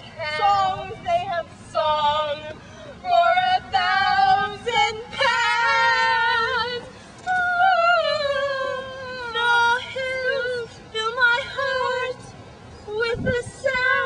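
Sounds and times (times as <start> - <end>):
woman singing: 0.0 - 14.0.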